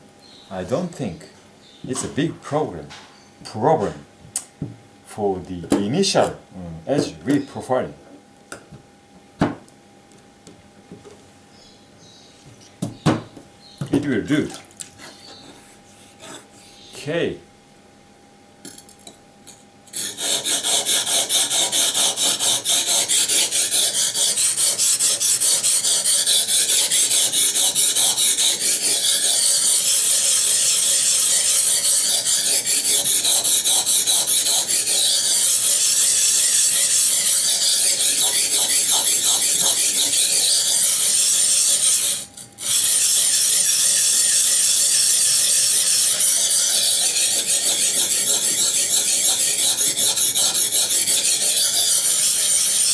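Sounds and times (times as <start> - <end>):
knife scraping on water stone: 19.9 - 52.9.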